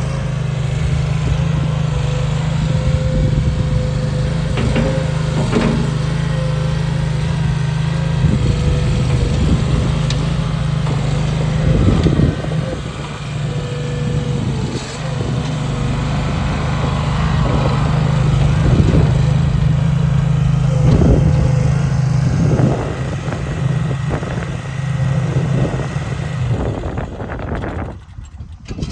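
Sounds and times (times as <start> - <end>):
small engine running: 0.0 - 28.9
short knocks: 4.5 - 6.2.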